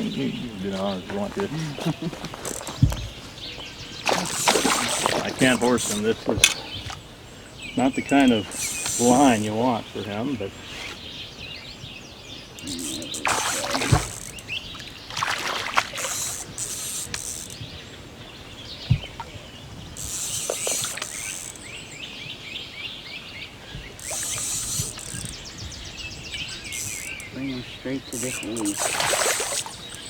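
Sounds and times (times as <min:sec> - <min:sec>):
birds chirping: 0:00.0 - 0:30.0
dull thumps: 0:00.7 - 0:07.0, 0:12.6 - 0:14.5
high hissing bursts: 0:08.4 - 0:09.4, 0:12.6 - 0:14.4, 0:24.0 - 0:25.4.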